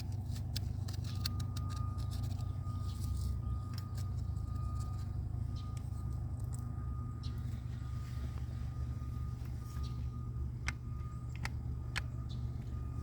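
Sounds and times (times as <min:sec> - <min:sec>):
low mechanical hum: 0:00.0 - 0:13.0
grease gun metallic clicks: 0:10.6 - 0:12.7.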